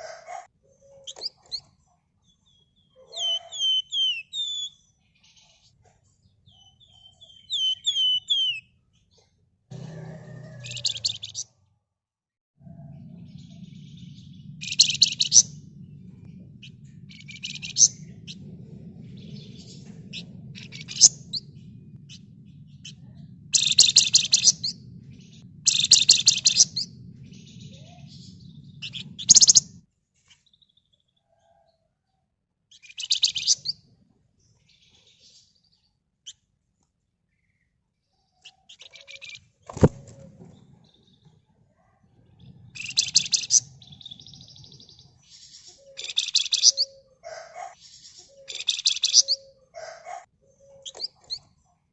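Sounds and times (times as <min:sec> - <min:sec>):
songbird trilling: 0:03.0 - 0:04.8, 0:06.6 - 0:08.7, 0:10.6 - 0:11.5, 0:12.6 - 0:29.8, 0:32.8 - 0:33.8, 0:42.4 - 0:51.5
low steady hum: 0:12.6 - 0:29.9, 0:42.1 - 0:47.1.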